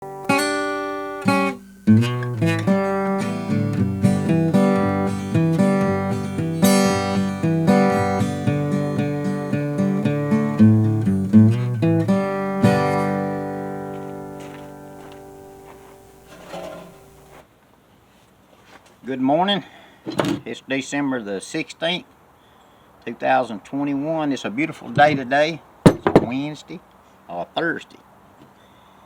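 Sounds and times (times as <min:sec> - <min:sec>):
acoustic guitar music: 0:00.0 - 0:17.4.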